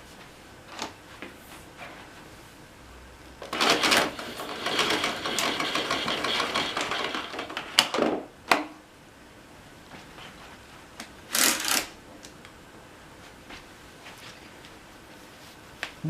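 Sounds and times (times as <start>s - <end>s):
plastic parts rattling and scraping: 3.4s - 8.0s.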